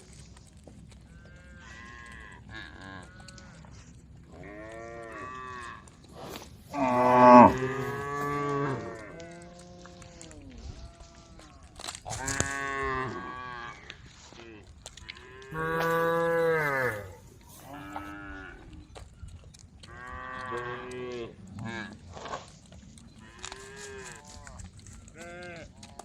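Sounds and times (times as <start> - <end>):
cattle mooing: 6.7 - 9.9, 15.2 - 18.6.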